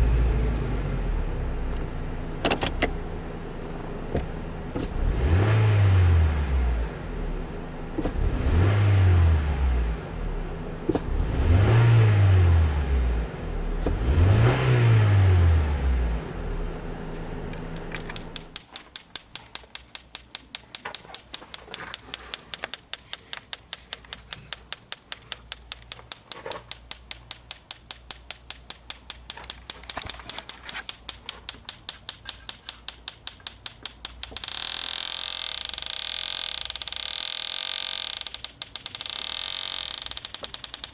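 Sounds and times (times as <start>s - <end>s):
car engine revving with misfire: 0.0s - 18.6s, 34.0s - 40.9s
rapid ticking: 17.9s - 40.9s.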